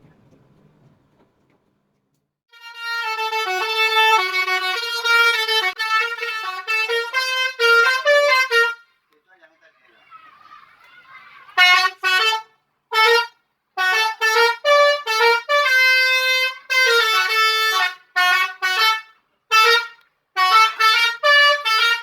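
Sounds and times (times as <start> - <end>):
musical bus air horn toots: 2.5 - 9.0, 11.5 - 22.0.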